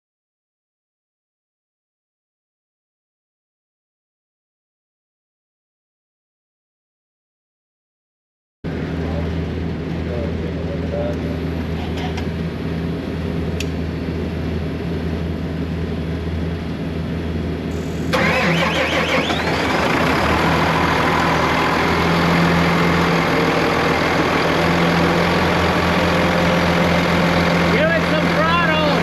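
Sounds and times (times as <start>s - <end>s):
diesel engine running: 8.7s - 29.0s
rising engine whine: 8.7s - 29.0s.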